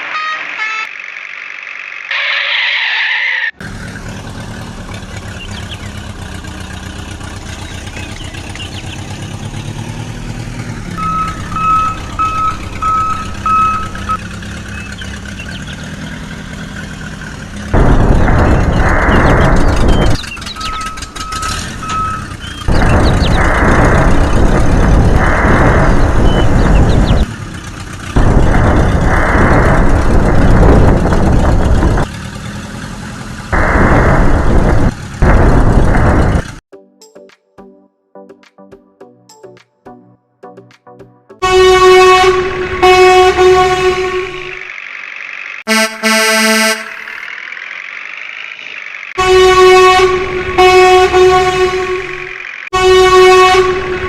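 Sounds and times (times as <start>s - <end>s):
truck horn honking: 0.0s - 1.0s, 10.9s - 14.4s, 20.6s - 22.9s, 41.4s - 44.7s, 45.6s - 47.3s, 49.2s - 54.0s
heavy vehicle engine: 0.0s - 36.6s, 41.4s - 54.0s.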